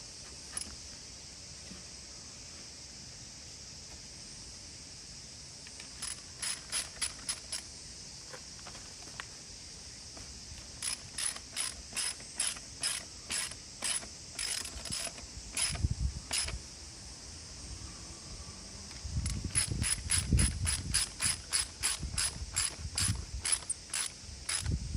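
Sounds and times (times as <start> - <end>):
ratchet wrench clicking: 5.7 - 7.7, 10.8 - 16.6, 19.2 - 24.8.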